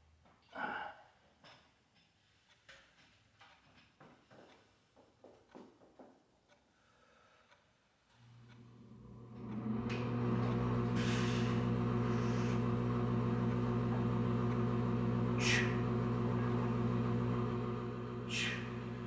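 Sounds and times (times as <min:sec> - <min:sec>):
low electrical hum: 0:08.2 - 0:19.0
sharp breath hisses: 0:18.3 - 0:18.7.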